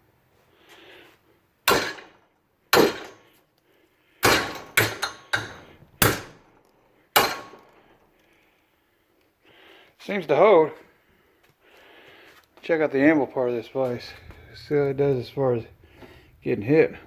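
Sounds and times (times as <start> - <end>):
sledgehammer striking metal vise: 1.7 - 2.2, 2.8 - 3.3, 4.2 - 6.6, 7.2 - 7.9.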